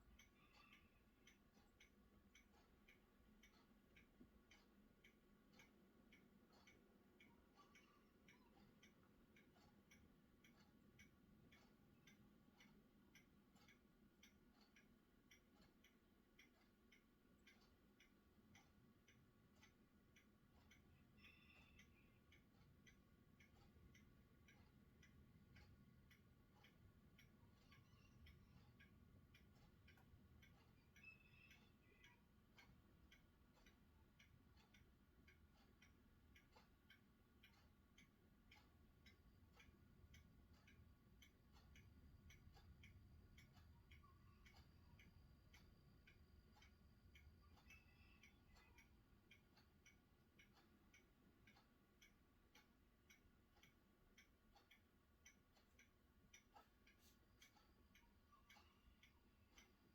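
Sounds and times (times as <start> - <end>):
faint rapid ticking: 0.0 - 59.9.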